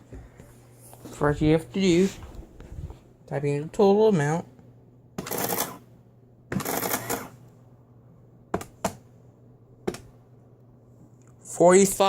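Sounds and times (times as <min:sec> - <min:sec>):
rustling handling noise: 0:00.1 - 0:03.2.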